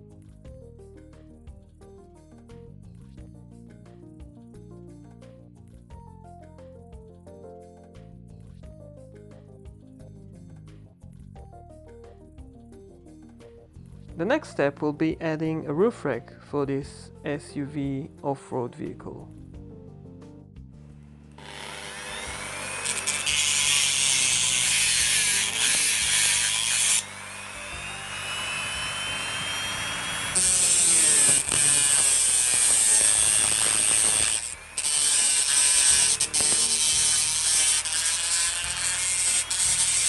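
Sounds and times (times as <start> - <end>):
tool rasping on small part: 21.4 - 40.0.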